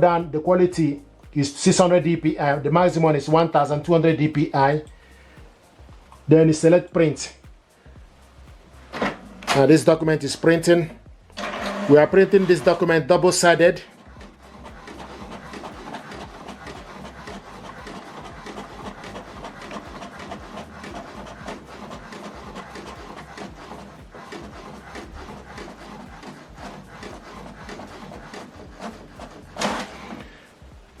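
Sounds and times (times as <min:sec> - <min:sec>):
low motor hum: 0:04.8 - 0:06.5, 0:07.3 - 0:31.0
printer clicks: 0:14.2 - 0:30.4
printer carriage shuttling: 0:14.8 - 0:30.2.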